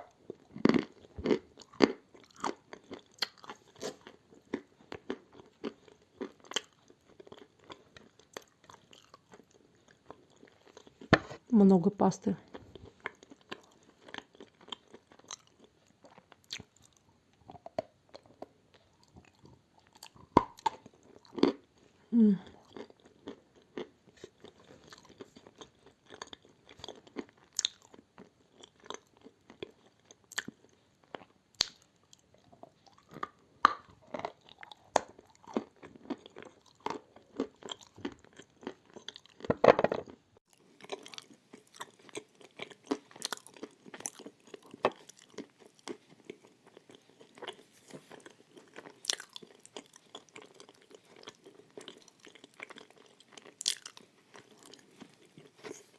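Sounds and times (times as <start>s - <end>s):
crunching and chewing clay: 0.0s - 11.6s, 12.3s - 55.9s.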